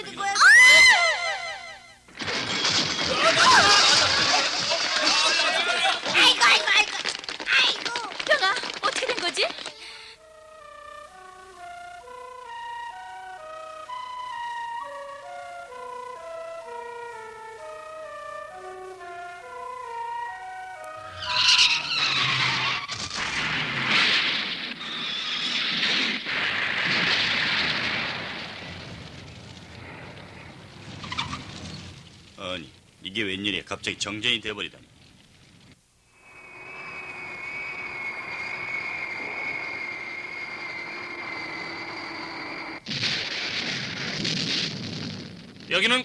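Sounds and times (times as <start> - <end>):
simple music melody: 10.2 - 21.2
jet airliner engines whining: 36.1 - 42.8.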